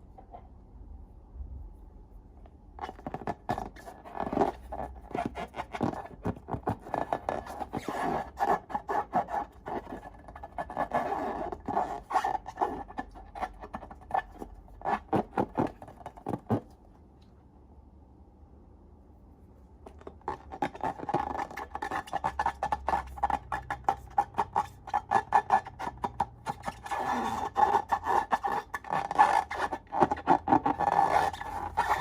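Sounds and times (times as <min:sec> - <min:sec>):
slime crackling and scraping: 0:20.0 - 0:32.0.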